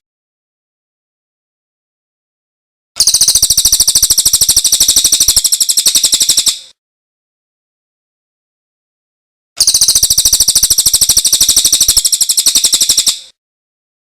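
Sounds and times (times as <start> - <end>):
songbird trilling: 3.0 - 6.7, 9.6 - 13.3.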